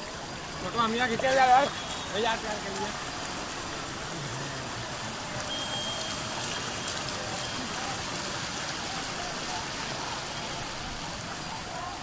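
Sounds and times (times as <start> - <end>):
rushing water hiss: 0.0 - 12.0
faint voices: 6.8 - 12.0.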